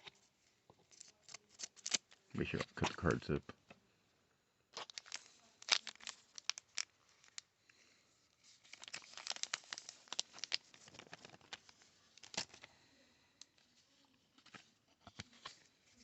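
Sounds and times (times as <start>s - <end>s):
wrapper tearing and crinkling: 0.9s - 2.6s, 4.8s - 7.4s, 8.6s - 12.7s
sharp wrapper snap: 1.0s - 2.6s.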